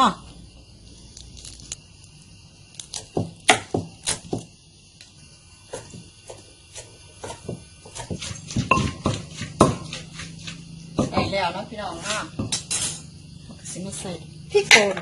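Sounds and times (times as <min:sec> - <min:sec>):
knife chopping on cutting board: 0:06.8 - 0:11.2.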